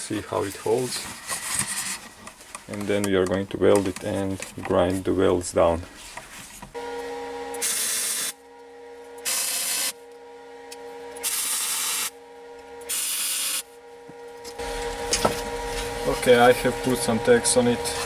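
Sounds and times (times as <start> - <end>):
steady hum: 0.0 - 18.0
crackling welding arc hiss: 11.2 - 12.1, 12.9 - 13.7.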